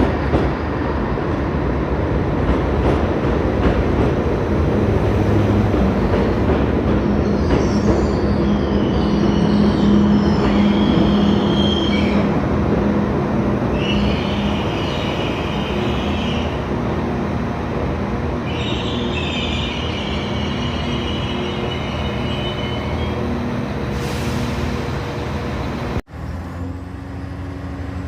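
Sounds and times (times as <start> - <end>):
diesel train engine rumbling: 0.0 - 28.0
train wheels squealing on rails: 6.0 - 12.4, 13.7 - 16.6, 18.4 - 25.8.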